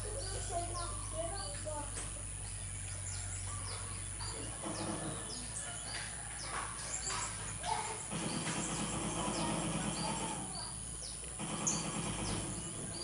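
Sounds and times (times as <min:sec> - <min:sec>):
parrots calling: 0:00.0 - 0:11.8.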